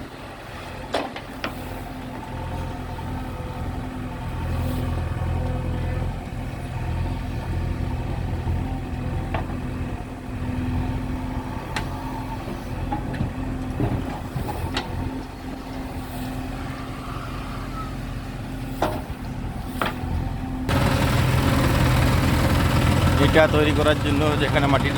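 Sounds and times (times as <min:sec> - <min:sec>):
heavy diesel engine running: 0:20.4 - 0:24.9.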